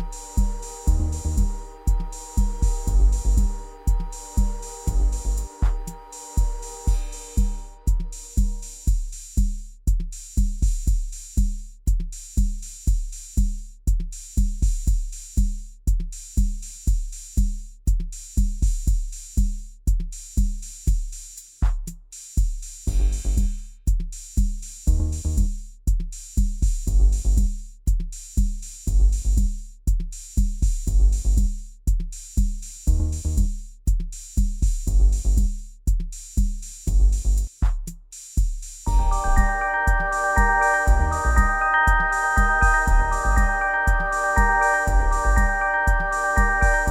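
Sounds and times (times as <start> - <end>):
bass and chord notes: 0.0 - 8.2, 38.9 - 46.9
steady drum beat: 0.0 - 46.9.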